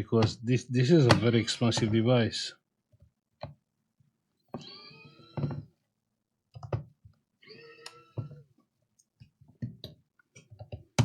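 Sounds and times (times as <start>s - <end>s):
drawn-out squeaky tones: 4.6s - 5.7s.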